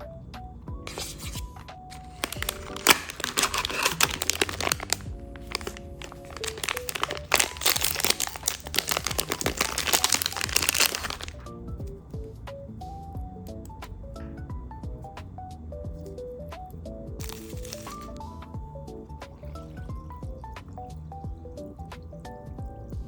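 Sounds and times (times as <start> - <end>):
soft background music: 0.0 - 23.0
plastic packaging crinkling: 0.9 - 11.5, 17.2 - 18.2.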